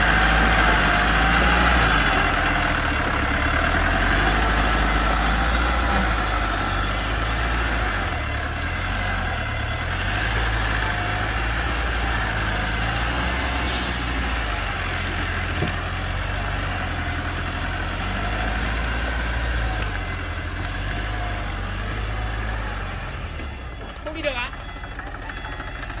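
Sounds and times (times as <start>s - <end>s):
heavy diesel engine running: 0.0s - 26.0s
burst of hiss: 13.7s - 15.2s.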